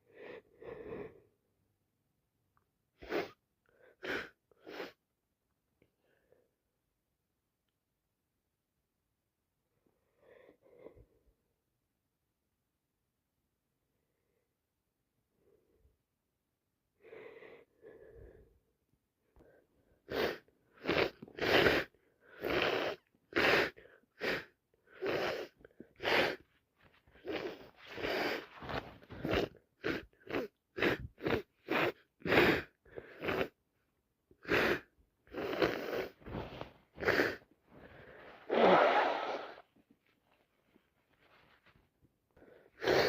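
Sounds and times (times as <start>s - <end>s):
soft breaths: 17.0s - 33.6s, 34.3s - 43.0s
woman sneezing rapidly: 38.5s - 39.6s.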